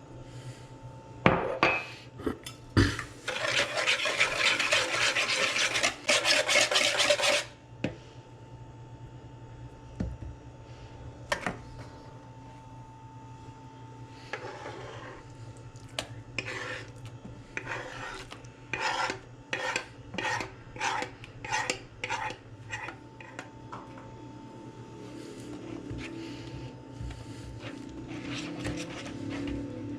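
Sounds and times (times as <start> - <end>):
utensil scraping in a bowl: 3.2 - 7.6, 14.2 - 15.4, 16.0 - 23.5, 25.2 - 26.6, 27.2 - 29.8.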